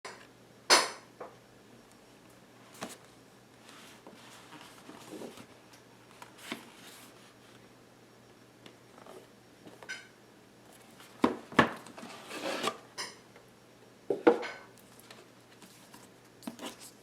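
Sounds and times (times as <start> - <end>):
packaging rustling and scraping: 2.7 - 7.6, 10.7 - 12.8, 14.9 - 17.0.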